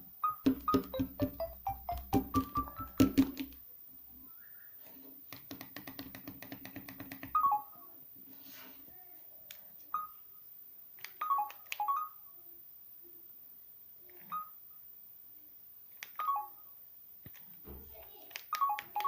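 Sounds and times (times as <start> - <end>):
short electronic blips: 0.2 - 3.4
fast run of phone ticks: 0.4 - 3.6.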